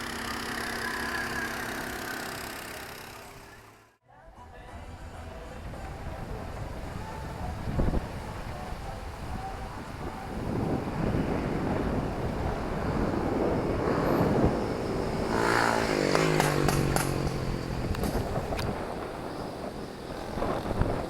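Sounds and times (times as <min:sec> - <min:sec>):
motor vehicle passing: 0:00.0 - 0:03.9, 0:11.1 - 0:19.6.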